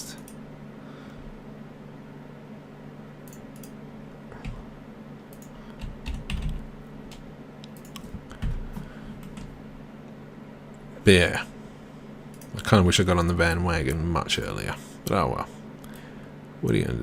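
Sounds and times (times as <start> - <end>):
steady low hum: 0.0 - 17.0
keyboard and mouse clicks: 5.3 - 9.5.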